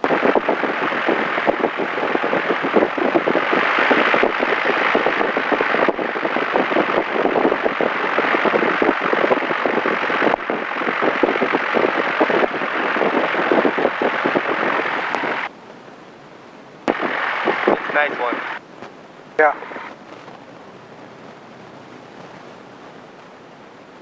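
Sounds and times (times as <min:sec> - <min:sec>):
airplane engine and propeller: 0:00.0 - 0:24.0.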